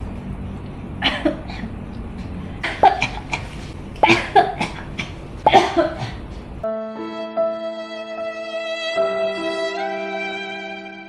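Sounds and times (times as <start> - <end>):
person coughing: 2.6 - 6.3.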